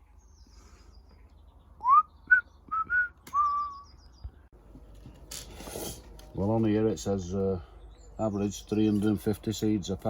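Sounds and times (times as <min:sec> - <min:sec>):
faint high chirping: 0:00.0 - 0:04.5
person whistling: 0:01.8 - 0:03.8.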